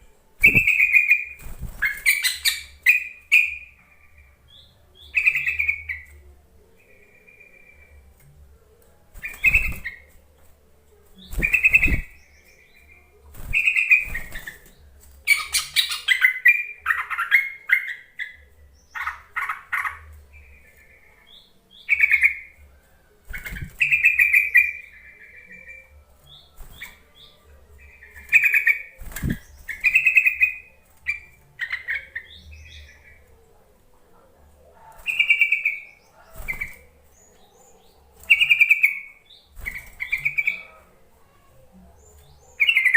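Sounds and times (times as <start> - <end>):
bird whistled calls: 0.4 - 1.3
bird rapid chattering: 0.4 - 3.6, 9.2 - 10.0, 11.2 - 12.2, 28.2 - 32.7.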